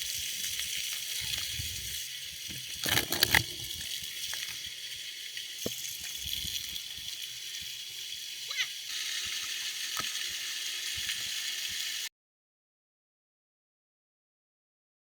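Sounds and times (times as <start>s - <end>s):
water sloshing and splashing: 1.3s - 4.8s.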